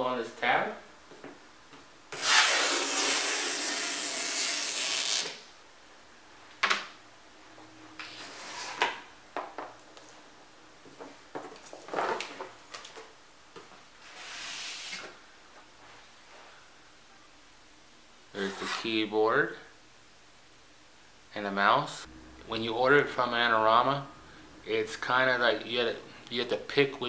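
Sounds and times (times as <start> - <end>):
cardboard tear strip ripping: 2.2 - 5.4.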